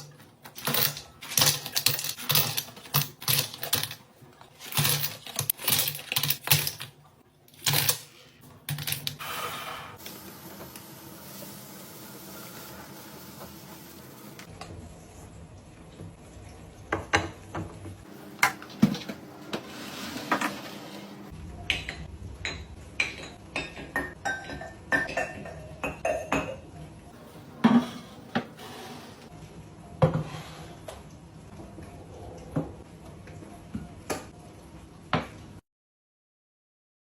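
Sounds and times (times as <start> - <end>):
glass jars and dishes clinking: 21.8 - 26.6.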